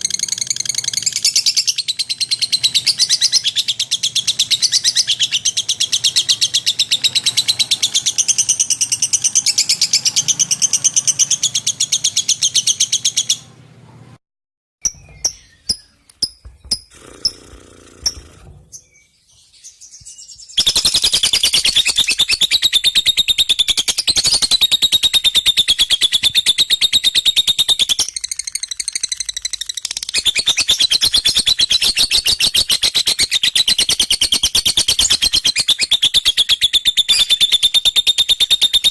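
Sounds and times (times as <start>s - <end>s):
bird chattering chirps: 14.8s - 38.9s.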